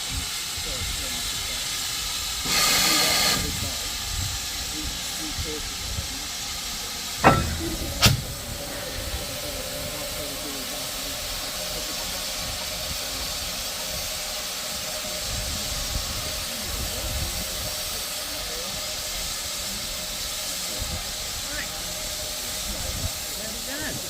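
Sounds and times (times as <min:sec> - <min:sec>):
steam hissing: 0:00.0 - 0:24.0.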